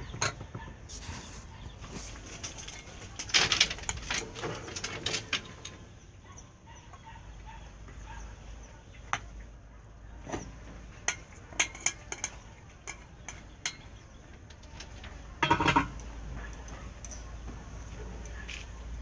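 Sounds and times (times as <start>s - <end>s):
utensils clinking against dishes: 1.9s - 5.8s, 10.3s - 18.8s.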